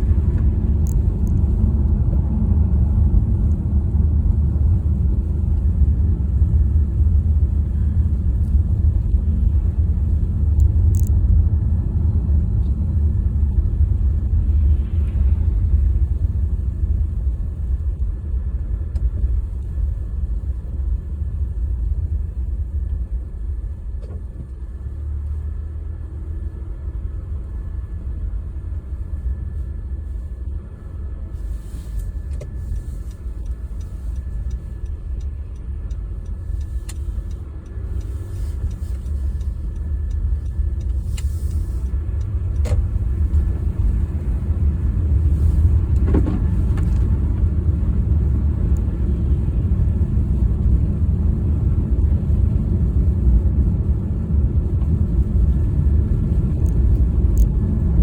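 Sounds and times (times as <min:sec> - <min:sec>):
car road and engine rumble: 0:00.0 - 0:58.0.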